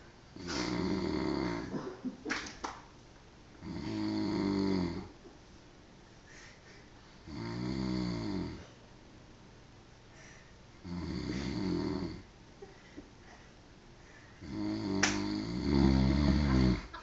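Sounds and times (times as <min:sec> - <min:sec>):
man snoring: 0:00.4 - 0:01.8, 0:03.6 - 0:05.1, 0:07.3 - 0:08.7, 0:10.8 - 0:12.3, 0:14.4 - 0:16.9
quiet breathing: 0:06.1 - 0:09.0, 0:10.0 - 0:17.0.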